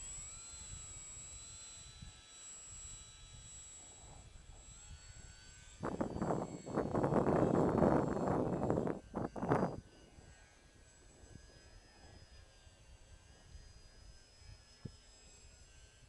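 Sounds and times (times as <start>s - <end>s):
high whine of small motor: 0.0s - 16.0s
wind buffeting microphone: 4.9s - 9.9s.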